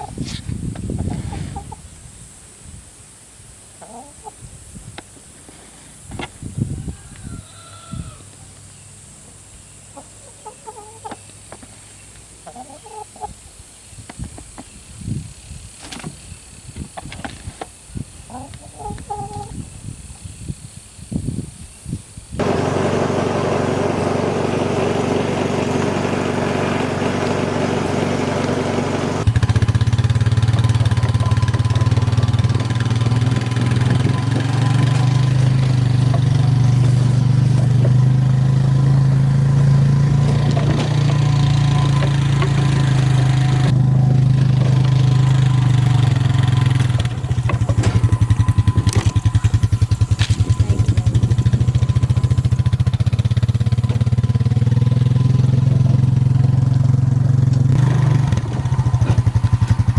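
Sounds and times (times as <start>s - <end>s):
petrol engine running: 22.4s - 59.9s.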